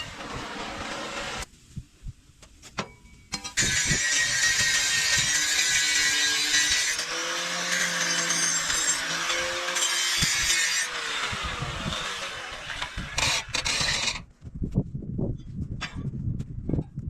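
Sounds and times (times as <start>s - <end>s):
power tool grinding steel: 0.0s - 1.5s, 3.4s - 14.3s.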